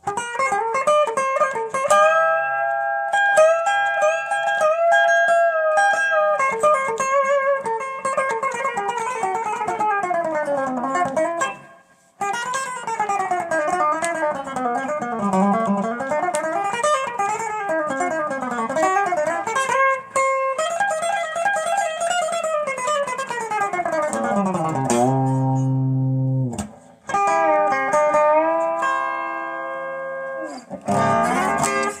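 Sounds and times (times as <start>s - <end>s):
electric guitar chords ringing: 13.2s - 32.0s
electric guitar string bends: 23.9s - 32.0s.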